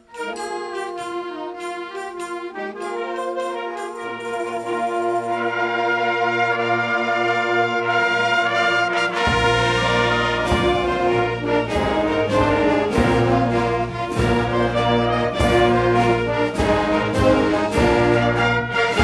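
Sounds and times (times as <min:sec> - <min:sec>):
concert band brass chords: 0:00.0 - 0:19.0
sharp percussion hits: 0:09.0 - 0:19.0.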